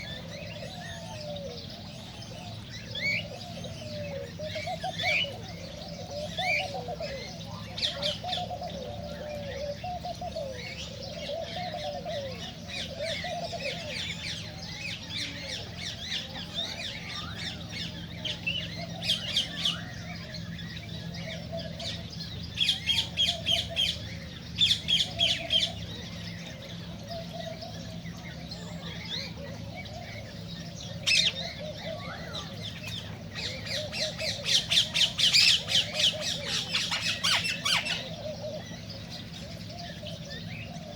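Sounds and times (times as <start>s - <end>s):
cockatiels chirping: 31.0s - 38.6s.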